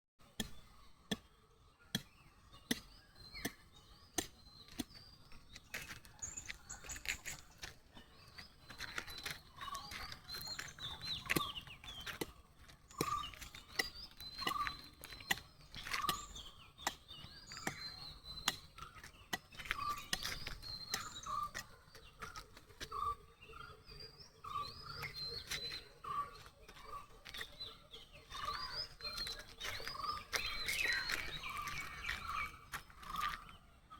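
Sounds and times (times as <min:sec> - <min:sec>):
birds chirping: 0:00.2 - 0:33.9.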